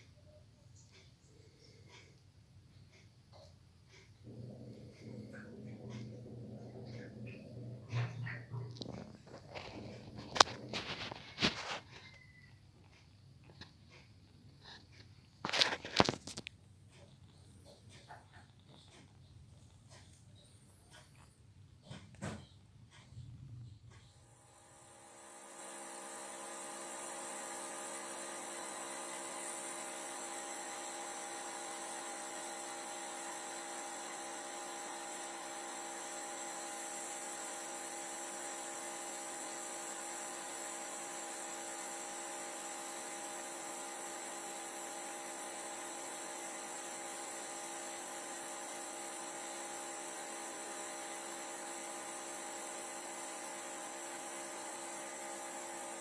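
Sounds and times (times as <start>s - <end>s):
small electric motor humming: 24.0s - 56.0s
hiss: 24.4s - 56.0s.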